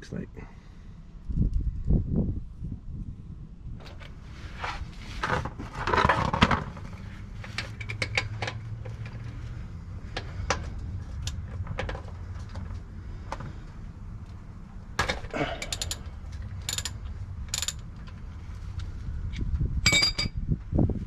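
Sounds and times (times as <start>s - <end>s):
scraping rustle: 3.8s - 11.2s
hand tools clicking and knocking: 7.4s - 9.4s, 15.0s - 18.2s.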